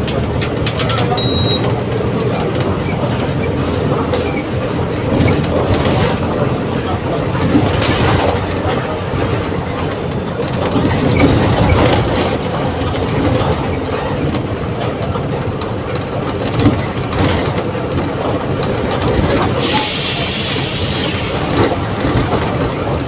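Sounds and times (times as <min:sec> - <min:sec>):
bus body rattling: 0:00.0 - 0:23.0
bus engine drone: 0:00.0 - 0:23.0
air hiss: 0:19.6 - 0:21.8.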